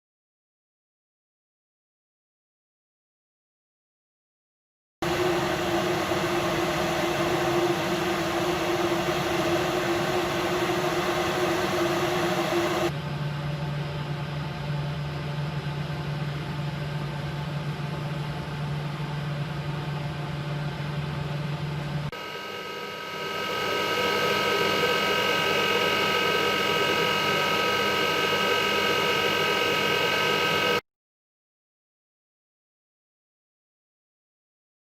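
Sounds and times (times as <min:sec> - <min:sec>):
ventilation fan humming: 0:05.1 - 0:30.7.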